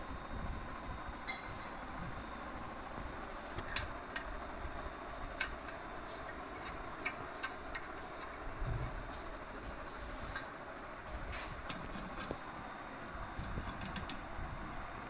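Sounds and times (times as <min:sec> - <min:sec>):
steady low hiss: 0:00.0 - 0:15.0
light clicks and taps: 0:03.5 - 0:04.3, 0:05.3 - 0:09.3, 0:13.4 - 0:14.3.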